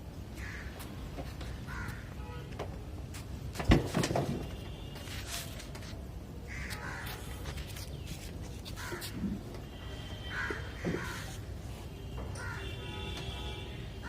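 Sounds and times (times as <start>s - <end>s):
bird cawing: 0.4s - 0.8s, 1.6s - 2.2s, 6.5s - 7.3s, 10.2s - 11.4s, 12.4s - 12.7s.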